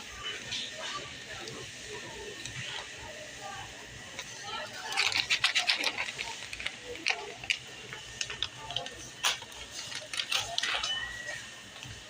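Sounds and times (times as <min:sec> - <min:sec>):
grocery packaging being handled: 0:04.4 - 0:12.0.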